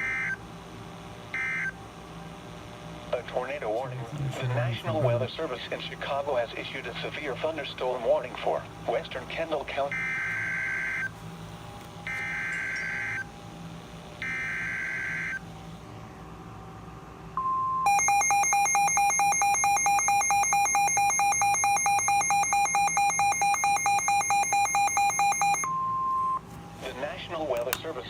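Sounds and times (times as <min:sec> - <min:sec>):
steady warning alarm tone: 0:01.3 - 0:01.8, 0:09.8 - 0:11.2, 0:12.0 - 0:13.4, 0:14.2 - 0:15.5, 0:17.4 - 0:26.4
rapidly pulsing alarm beep: 0:09.9 - 0:11.1, 0:12.1 - 0:13.3, 0:14.2 - 0:15.4, 0:17.4 - 0:26.4.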